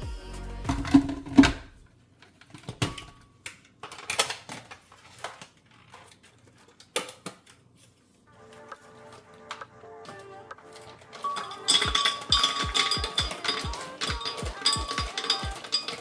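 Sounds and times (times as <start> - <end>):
small hard objects clicking: 10.8 - 16.0.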